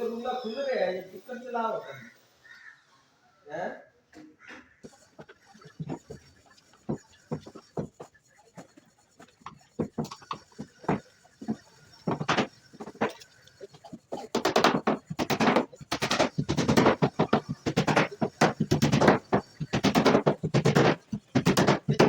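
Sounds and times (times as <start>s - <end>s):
tools striking wood: 4.8s - 22.0s.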